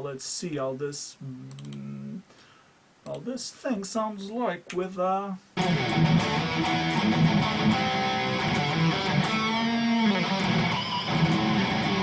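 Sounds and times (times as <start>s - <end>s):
electric guitar chords and notes: 5.6s - 12.0s.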